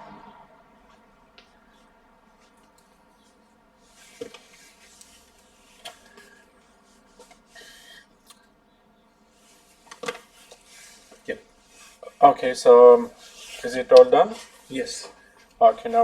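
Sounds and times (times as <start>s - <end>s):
soft rubbing and scraping: 1.7s - 7.8s, 9.3s - 15.2s.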